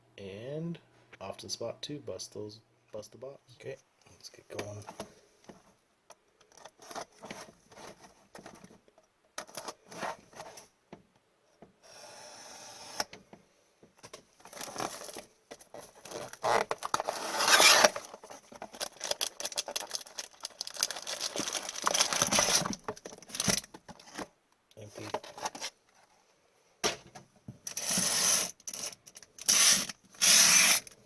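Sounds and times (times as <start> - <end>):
plastic wrap crinkling and tearing: 14.5 - 24.2
cardboard scraping: 15.8 - 19.1, 20.9 - 24.3, 27.7 - 28.9.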